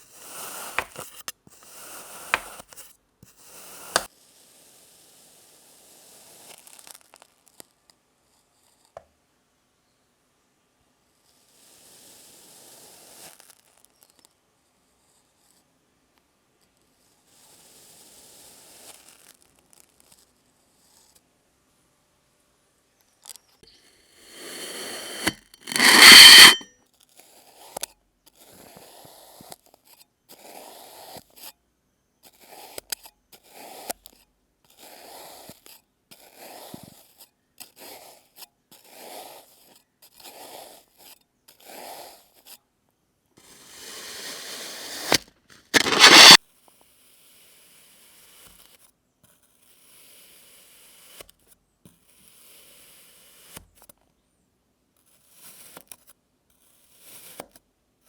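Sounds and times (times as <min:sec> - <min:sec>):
sand crunching and scraping: 0:45.8 - 0:46.4.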